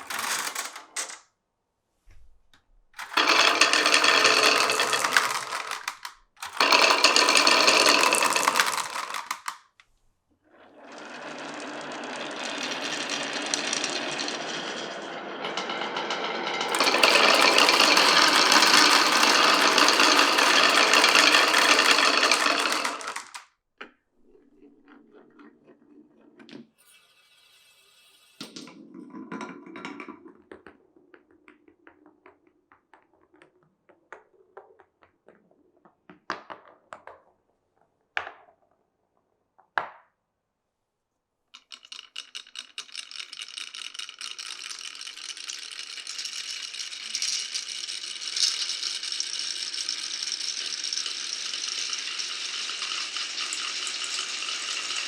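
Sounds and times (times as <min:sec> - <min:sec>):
marbles rolling down marble run: 0:00.0 - 0:01.2, 0:03.0 - 0:09.7, 0:10.5 - 0:23.5, 0:41.6 - 0:55.0.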